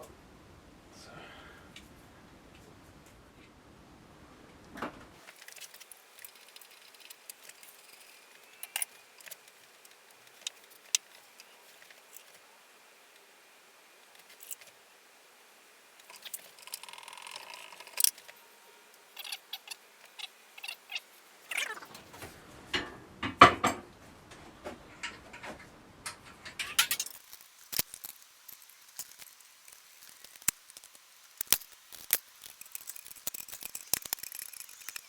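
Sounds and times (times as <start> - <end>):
metal scraping: 26.1 - 35.0
tools and metal parts clicking: 26.1 - 35.0.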